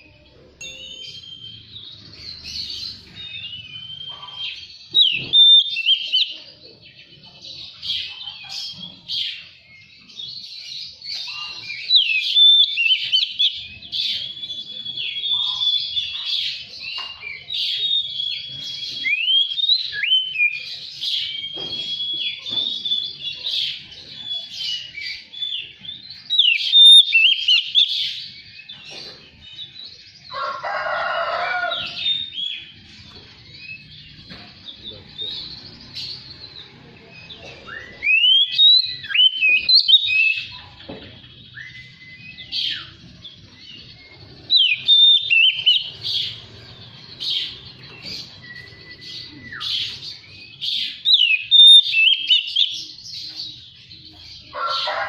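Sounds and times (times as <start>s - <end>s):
bird singing whistled song: 0.6s - 6.4s, 11.2s - 16.3s, 17.0s - 28.8s, 33.4s - 40.8s, 41.4s - 53.6s
harsh bird call: 44.2s - 52.8s.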